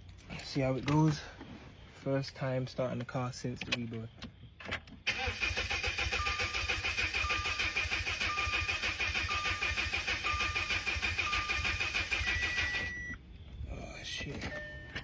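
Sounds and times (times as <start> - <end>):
engine cranking on starter: 5.0 - 13.1.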